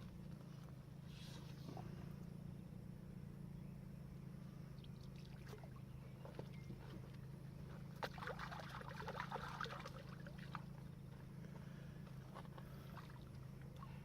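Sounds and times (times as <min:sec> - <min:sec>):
steady low hum: 0:00.0 - 0:14.0
water splashing and dripping: 0:08.0 - 0:10.7.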